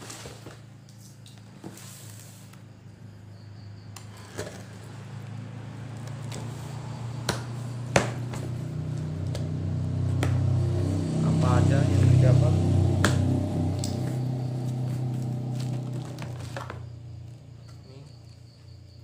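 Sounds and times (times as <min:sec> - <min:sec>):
low steady hum: 0:08.6 - 0:19.0.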